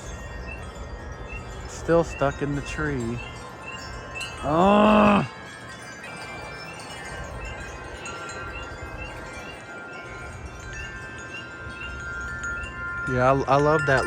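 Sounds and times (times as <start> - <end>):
spring peeper peeping: 0.0 - 5.3
metal wind chimes ringing: 0.0 - 14.0.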